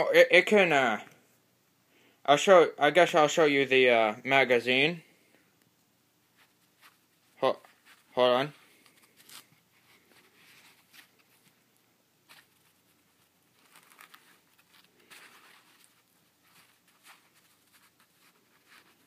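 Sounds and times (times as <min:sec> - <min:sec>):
faint rustling: 0:05.0 - 0:19.0.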